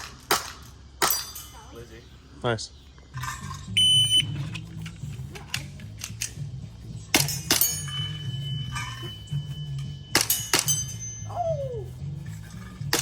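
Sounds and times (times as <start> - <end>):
background music with low beat: 3.1 - 13.0
short electronic beep: 3.8 - 4.3.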